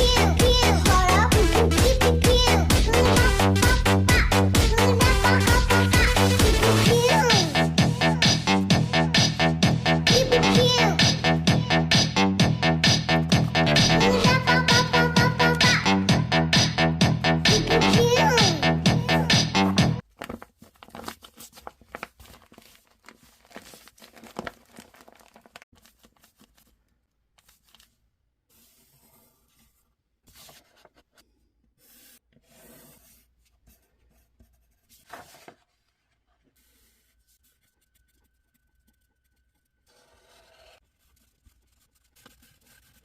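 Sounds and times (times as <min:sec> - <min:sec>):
craft materials tearing and rustling: 0:20.0 - 0:28.0.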